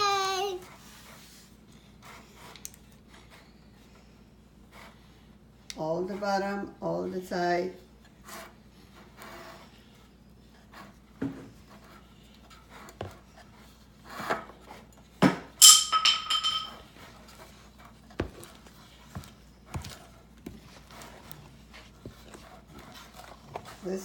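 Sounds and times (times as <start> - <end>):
kitchenware knocks and taps: 15.2 - 16.8
sharp ringing clang: 15.6 - 16.8.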